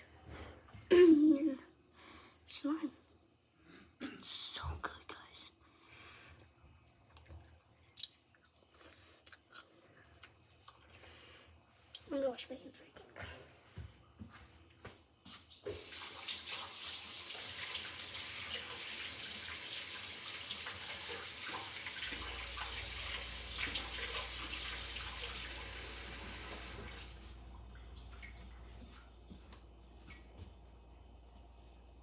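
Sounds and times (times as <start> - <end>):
tap running into a sink: 15.6 - 27.3
water dripping: 15.6 - 30.5.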